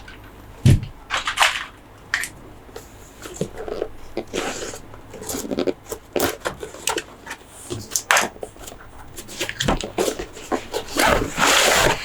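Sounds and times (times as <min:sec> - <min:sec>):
packaging rustling: 0:03.1 - 0:12.0.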